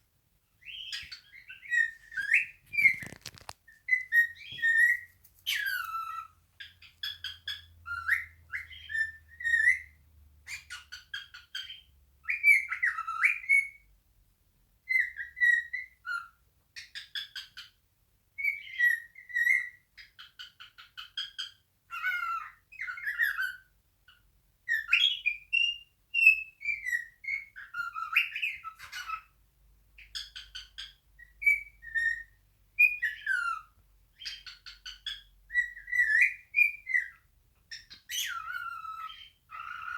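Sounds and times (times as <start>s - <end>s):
raspy bird chirps: 0.6s - 9.8s
cockatiel whistling song: 0.6s - 13.9s, 14.8s - 17.8s, 18.4s - 23.7s, 24.6s - 29.3s, 30.0s - 39.9s.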